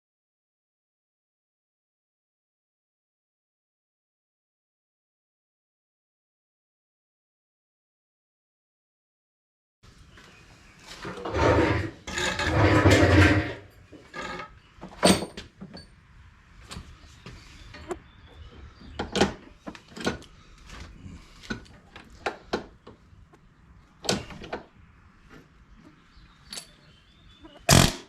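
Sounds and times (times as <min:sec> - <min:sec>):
hand tools scraping and rattling: 0:10.9 - 0:15.9, 0:26.4 - 0:26.9.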